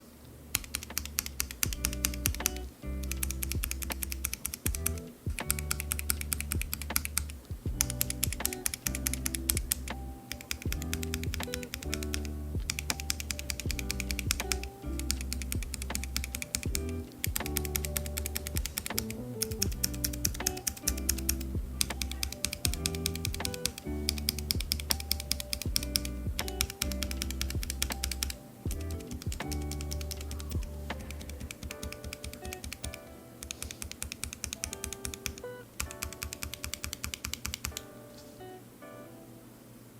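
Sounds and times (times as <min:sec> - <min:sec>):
mechanical keyboard clacking: 0:00.5 - 0:37.9
background music with bass line: 0:00.8 - 0:32.0.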